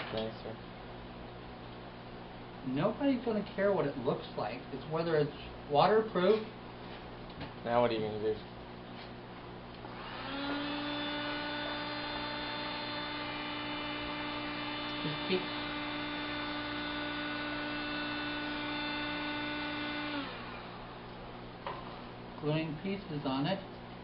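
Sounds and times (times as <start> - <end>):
small electric motor humming: 9.8 - 20.9.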